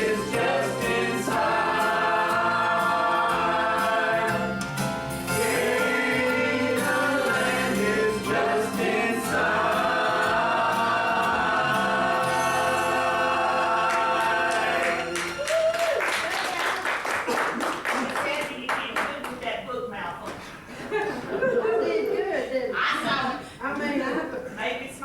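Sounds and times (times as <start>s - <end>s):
group singing a hymn: 0.0s - 15.5s.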